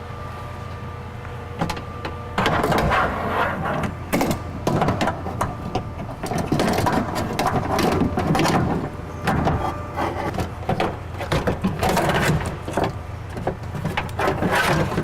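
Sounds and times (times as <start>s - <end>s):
metal rails clattering and scraping: 6.1s - 15.0s.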